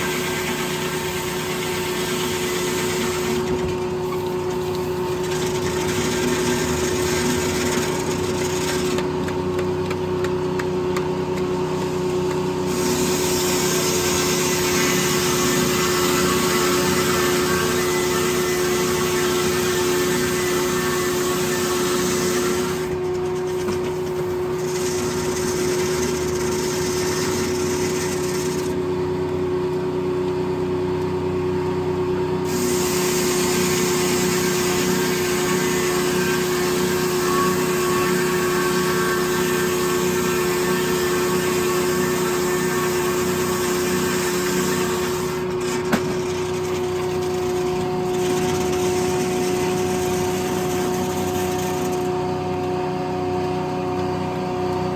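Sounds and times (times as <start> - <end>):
sawmill whine: 0.0 - 54.9.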